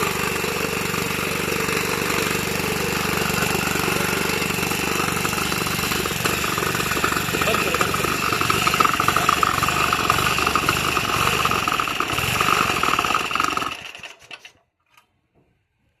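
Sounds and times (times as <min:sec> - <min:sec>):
petrol engine running: 0:00.0 - 0:14.5
engine clicks: 0:05.0 - 0:15.1.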